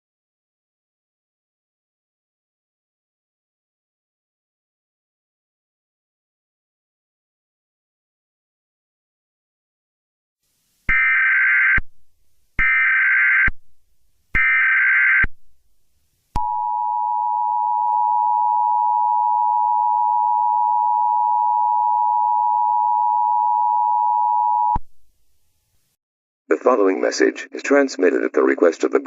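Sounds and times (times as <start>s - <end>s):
buzzing data tone bursts: 10.9s - 11.9s, 12.6s - 13.6s, 14.4s - 15.4s
two-tone attention signal: 16.4s - 24.8s.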